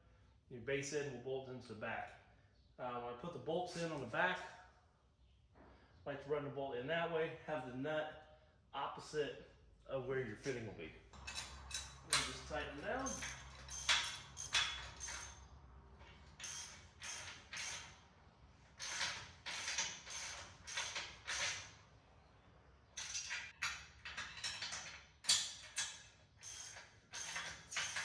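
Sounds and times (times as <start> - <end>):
ratchet wrench clicking: 13.0 - 15.4, 16.4 - 18.0, 18.8 - 21.7, 25.3 - 28.0.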